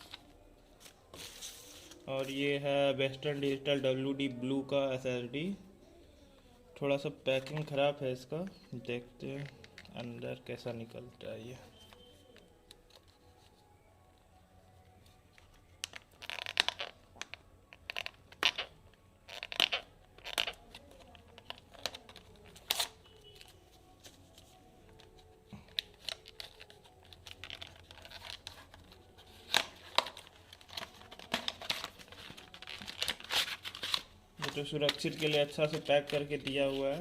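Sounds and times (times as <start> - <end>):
packaging being torn open: 15.8 - 23.5, 25.7 - 36.8.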